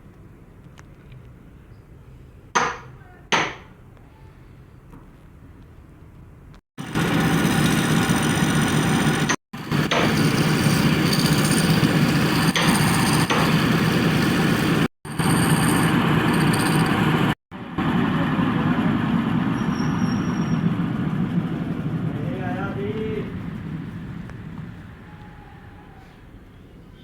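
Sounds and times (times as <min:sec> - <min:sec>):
woodworking machine running: 0:06.8 - 0:19.5.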